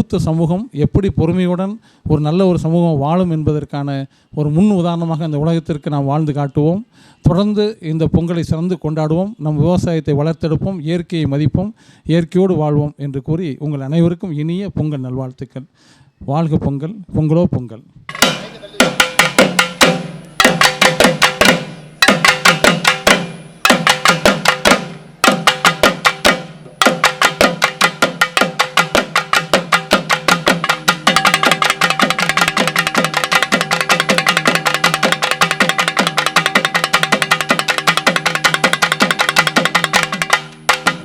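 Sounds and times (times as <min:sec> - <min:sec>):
rapid drumming: 0:18.1 - 0:41.0.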